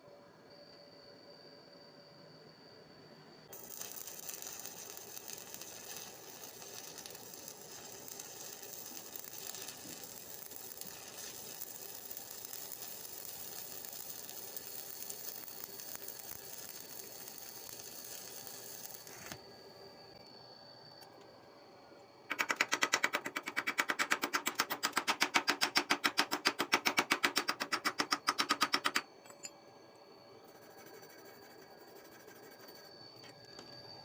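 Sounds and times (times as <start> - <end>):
welding arc crackling: 3.5 - 19.4.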